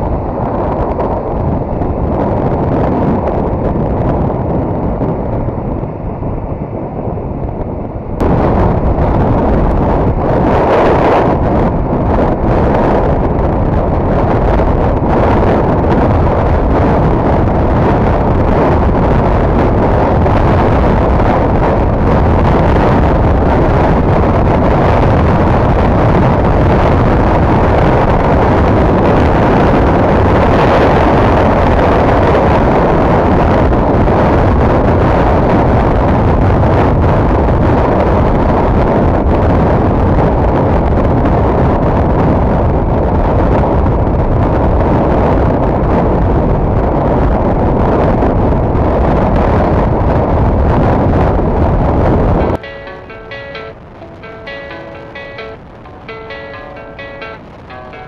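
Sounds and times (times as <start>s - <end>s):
road noise: 0.0s - 42.0s, 49.3s - 58.0s
wind buffeting microphone: 0.0s - 58.0s.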